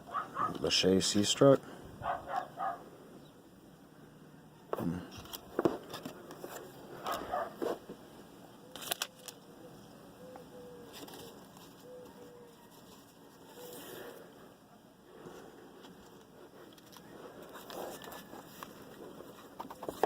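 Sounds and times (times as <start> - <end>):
cards and wrappers rustling: 5.1 - 8.0, 8.6 - 9.5, 10.8 - 14.3, 15.9 - 20.0.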